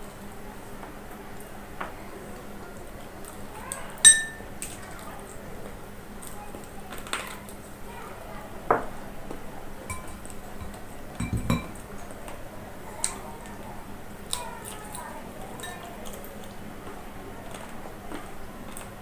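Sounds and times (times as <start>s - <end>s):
plates and cutlery clinking: 4.0s - 4.5s, 9.9s - 11.8s.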